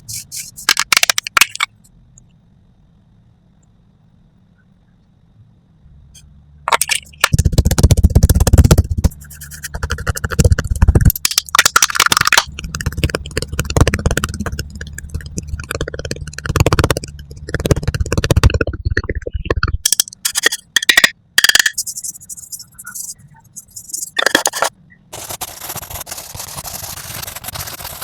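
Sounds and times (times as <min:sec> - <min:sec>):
tools scraping and tapping melon rind: 0:19.6 - 0:24.7.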